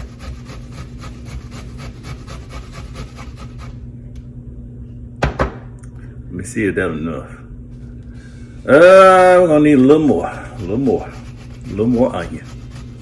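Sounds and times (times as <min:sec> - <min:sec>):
onion rasping on grater: 0:00.0 - 0:03.8, 0:08.9 - 0:13.0
sharp knocks: 0:05.2 - 0:05.7.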